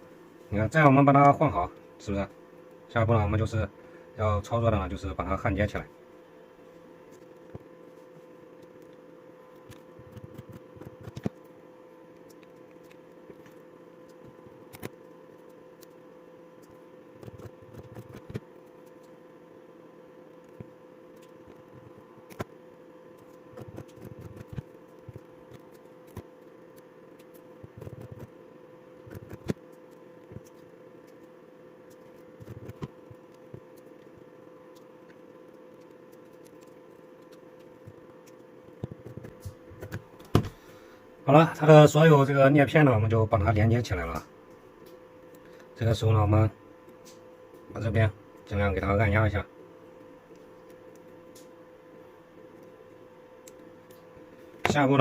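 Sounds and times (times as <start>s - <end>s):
steady hum: 0.0s - 55.0s.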